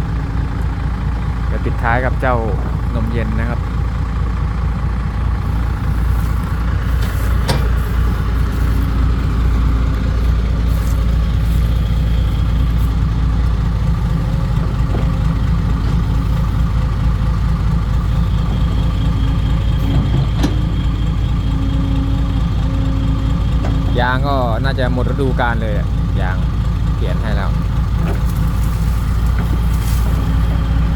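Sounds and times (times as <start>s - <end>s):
truck engine running: 0.0s - 30.9s.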